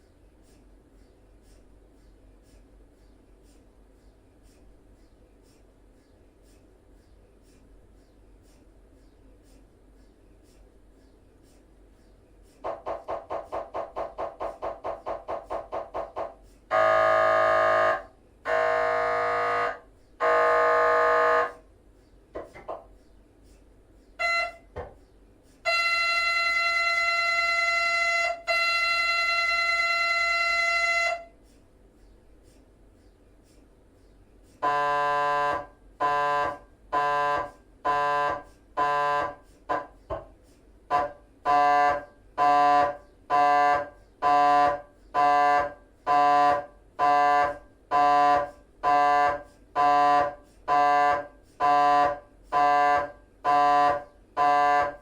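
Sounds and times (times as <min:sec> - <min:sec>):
mri scanner steady tone: 0:14.8 - 0:21.7, 0:24.2 - 0:24.8, 0:34.6 - 0:40.3, 0:40.9 - 0:55.0
mri scanner buzzing tones: 0:15.3 - 0:21.6
mri scanner short buzzes: 0:15.5 - 0:21.6.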